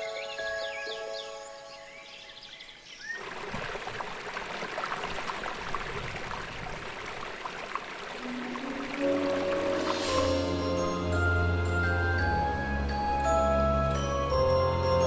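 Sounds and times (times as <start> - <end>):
stream water rushing: 3.2 - 15.0.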